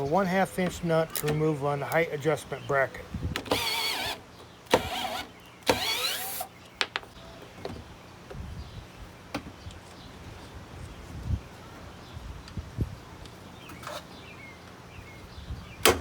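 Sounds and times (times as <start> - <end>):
metallic clicks of parts handled: 1.1 - 2.1
power drill spinning: 3.4 - 6.5.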